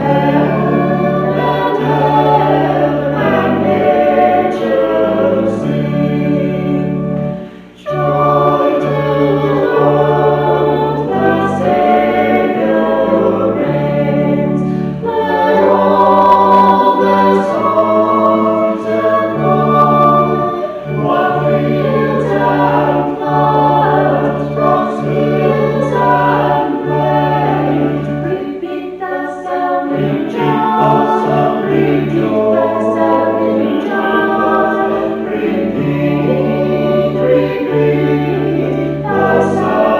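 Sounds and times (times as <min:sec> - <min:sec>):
choir singing held chords: 0:00.0 - 0:39.9.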